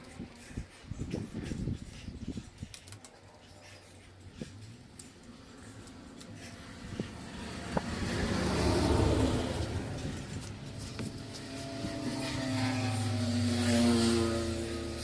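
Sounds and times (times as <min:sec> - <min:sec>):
vehicle engine revving: 0:06.3 - 0:15.0.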